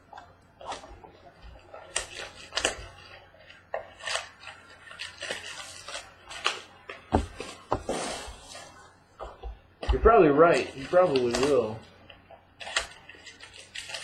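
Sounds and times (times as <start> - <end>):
cardboard and plastic crinkling: 1.6 - 9.3, 10.4 - 14.0.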